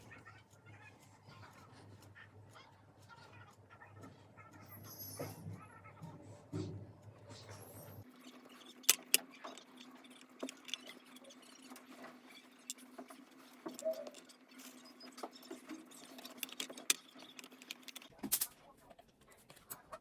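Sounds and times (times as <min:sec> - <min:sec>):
small parts clicking on wood: 0:08.2 - 0:18.5.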